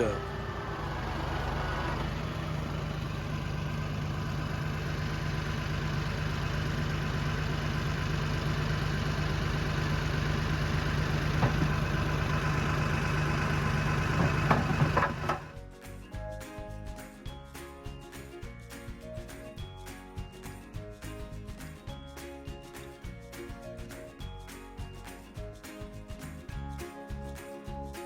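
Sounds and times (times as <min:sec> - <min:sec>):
tractor engine running: 0:00.0 - 0:15.7
light knocks: 0:11.4 - 0:12.0.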